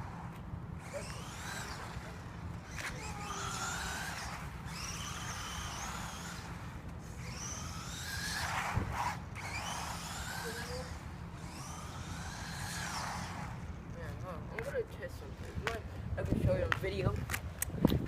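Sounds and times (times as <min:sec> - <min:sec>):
toy car motor whining: 0:00.0 - 0:14.1.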